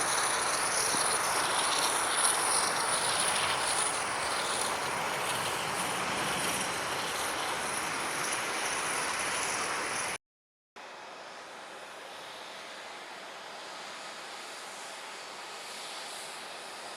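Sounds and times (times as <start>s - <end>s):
jet engines roaring with whine: 0.0s - 10.2s, 10.8s - 16.9s.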